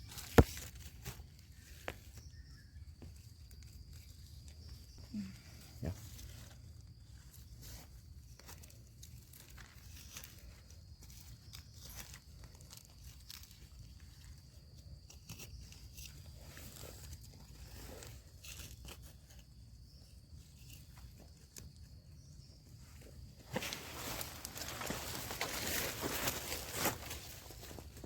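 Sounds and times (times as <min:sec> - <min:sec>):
dry leaves crunching: 0:23.4 - 0:28.0.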